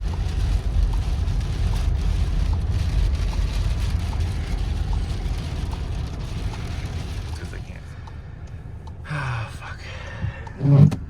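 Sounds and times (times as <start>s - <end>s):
vehicle low rumble: 0.0s - 11.0s.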